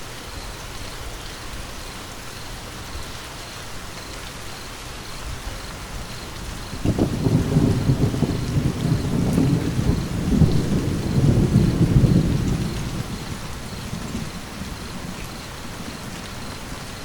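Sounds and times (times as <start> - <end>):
steady rain: 0.0 - 17.0
thunder rumbling: 5.9 - 17.0.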